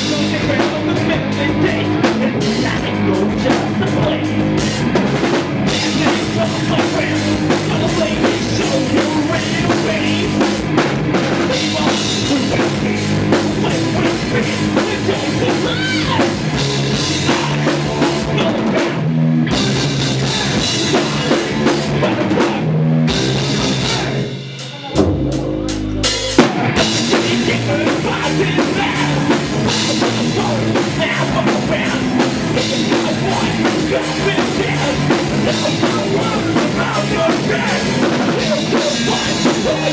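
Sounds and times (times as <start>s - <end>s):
rock band playing live: 0.0s - 39.9s
low bass note: 24.9s - 27.2s.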